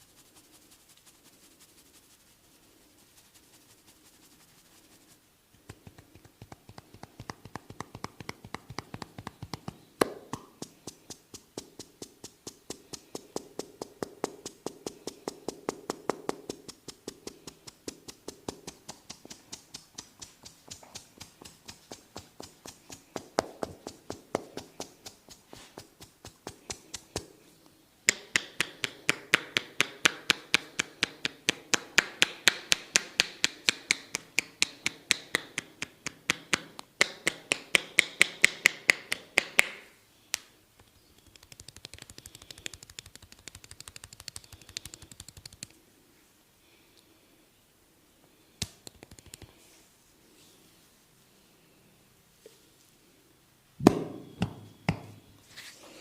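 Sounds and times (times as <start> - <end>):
soft fast patter of hands: 0.0 - 45.8, 48.6 - 49.8
hands slapping in massage: 5.5 - 27.4, 28.1 - 45.8, 48.6 - 49.6, 53.8 - 55.2.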